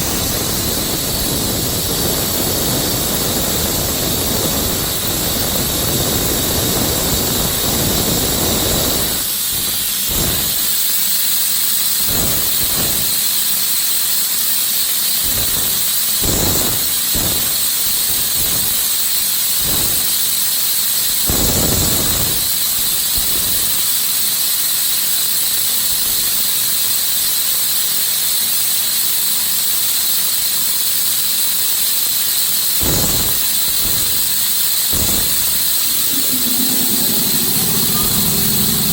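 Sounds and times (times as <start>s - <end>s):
air compressor hissing: 0.0s - 24.0s, 31.9s - 38.9s
low rumbling pulses: 35.0s - 38.9s.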